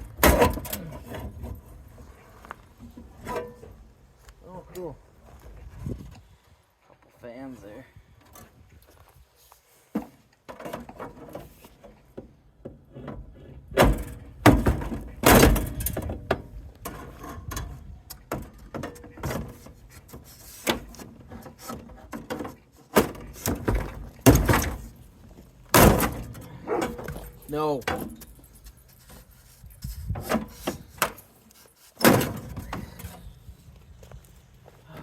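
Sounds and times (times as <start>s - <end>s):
sheet metal bangs and clanks: 13.8s - 16.1s, 25.7s - 27.0s
metal knocks and rattles: 20.7s - 25.0s.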